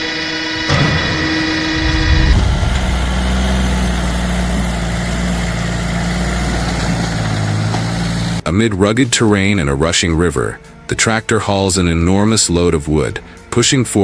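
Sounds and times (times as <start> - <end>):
tractor engine rumbling: 0.6 - 8.4.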